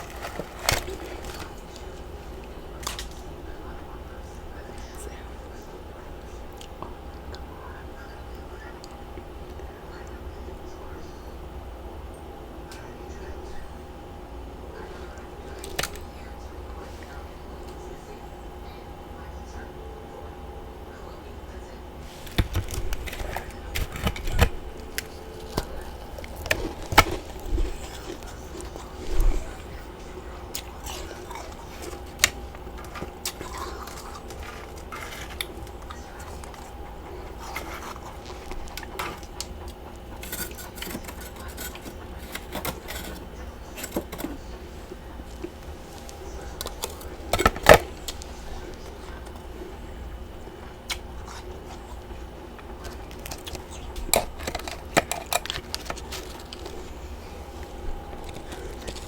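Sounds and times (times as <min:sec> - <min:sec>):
chewing crunchy frost: 0:00.0 - 0:05.4, 0:14.8 - 0:18.2, 0:22.0 - 0:59.0.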